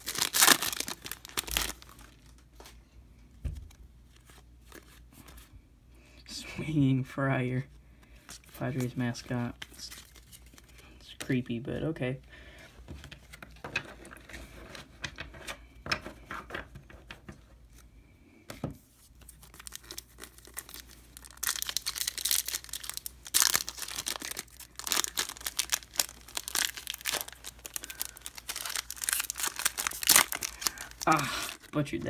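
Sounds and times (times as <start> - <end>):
wrapper tearing and crinkling: 0.0 - 2.4, 19.3 - 31.8.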